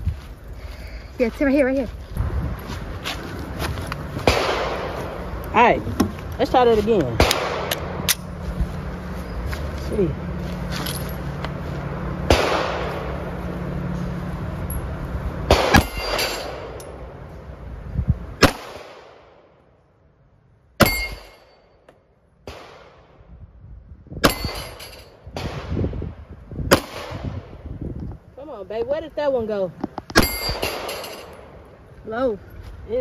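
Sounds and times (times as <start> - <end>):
pistol shots: 4.2 - 5.0, 7.2 - 8.1, 12.3 - 13.1, 15.5 - 16.8
short metallic ring: 15.8 - 17.0, 20.8 - 21.8, 24.2 - 25.2, 30.2 - 31.5.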